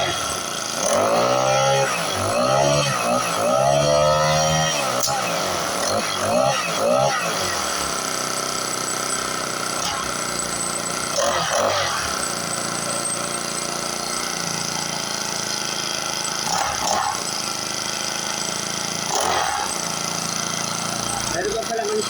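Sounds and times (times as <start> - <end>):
brush cutter engine running: 0.0 - 22.0.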